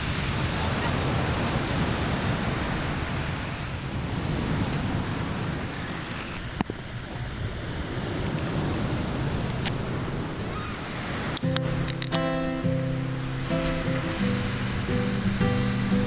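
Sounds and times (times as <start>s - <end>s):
ocean waves on a beach: 0.0s - 16.0s
sharp click: 11.4s - 12.2s.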